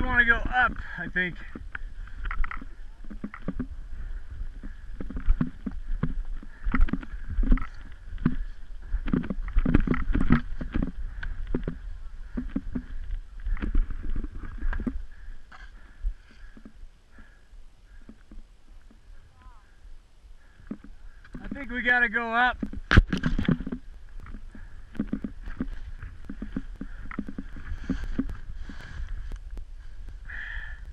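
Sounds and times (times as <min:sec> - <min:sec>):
skis and boots crunching snow: 0:22.4 - 0:30.2.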